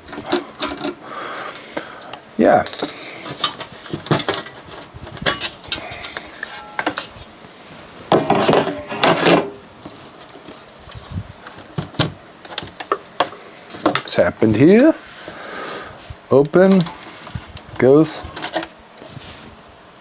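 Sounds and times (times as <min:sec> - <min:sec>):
hard plastic parts clinking: 0:02.7 - 0:04.6.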